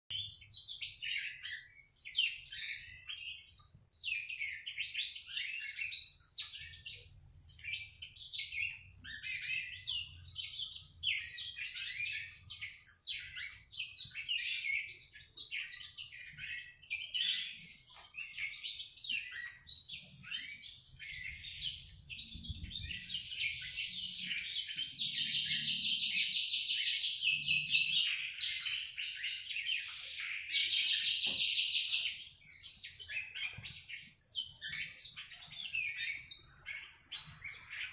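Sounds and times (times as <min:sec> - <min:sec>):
canary twittering song: 0:00.1 - 0:37.9.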